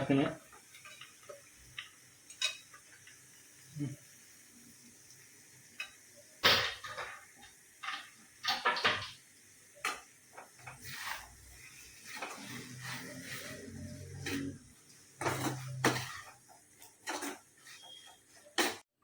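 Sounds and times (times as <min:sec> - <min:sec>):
metal spoon scraping a cooking pan: 0:00.5 - 0:03.2, 0:09.8 - 0:18.8.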